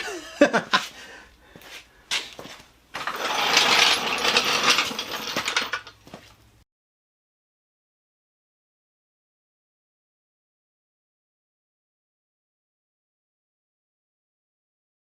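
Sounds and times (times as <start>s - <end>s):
power tool rattling buzz: 3.0s - 5.9s.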